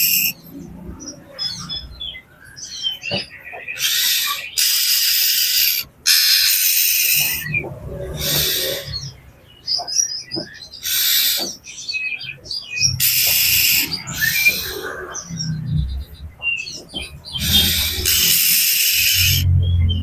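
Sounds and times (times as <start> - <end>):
bird harsh hissing rasps: 0.0 - 0.4, 3.8 - 9.1, 10.8 - 11.6, 13.0 - 15.2, 17.4 - 19.5
bird high chirping: 0.0 - 20.0.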